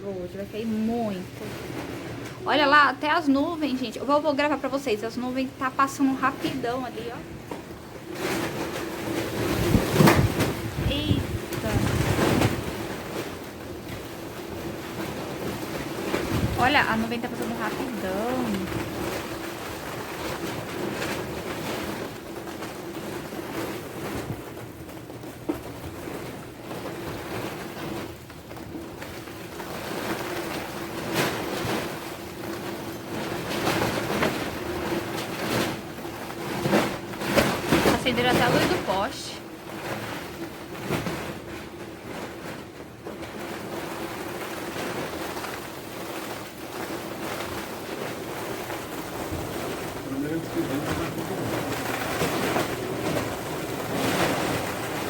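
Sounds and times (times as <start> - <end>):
gusty wind buffeting microphone: 8.9 - 14.0, 15.6 - 19.1.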